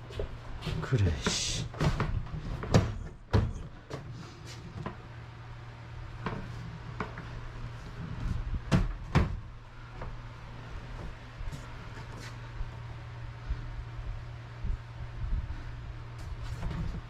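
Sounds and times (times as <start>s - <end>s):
steady low hum: 0.0s - 17.0s
knocks and clunks of handwork: 1.1s - 4.1s, 8.2s - 9.4s.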